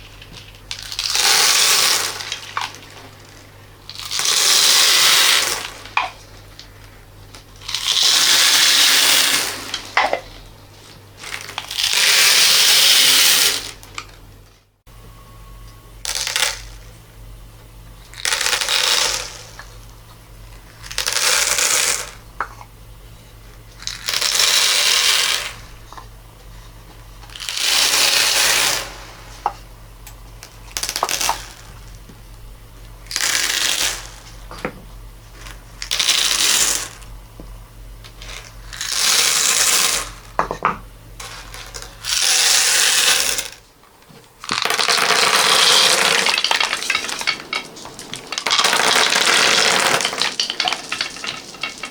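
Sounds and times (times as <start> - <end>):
steady low hum: 0.0 - 51.9
crystal beads pouring and rattling: 48.3 - 51.9.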